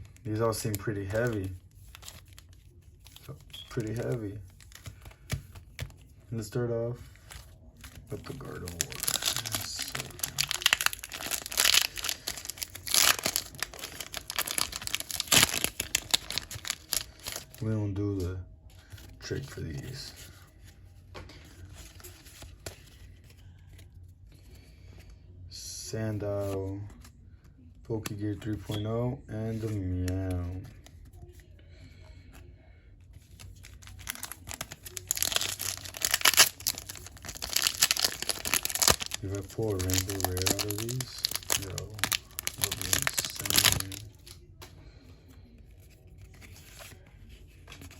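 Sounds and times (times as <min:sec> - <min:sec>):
foil wrapper crinkling: 0:07.3 - 0:17.6, 0:33.4 - 0:44.4
foil wrapper ripping: 0:08.2 - 0:17.6, 0:33.6 - 0:44.4.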